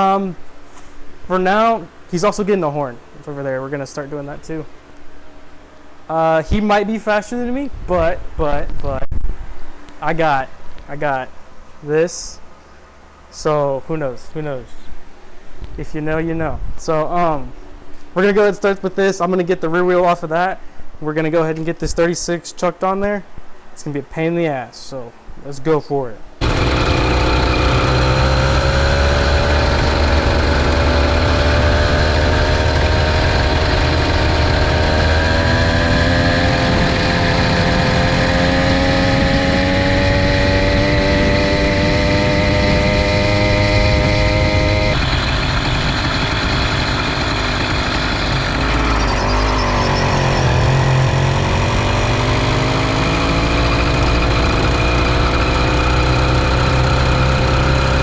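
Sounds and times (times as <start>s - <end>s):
small bicycle engine running: 26.4s - 58.0s.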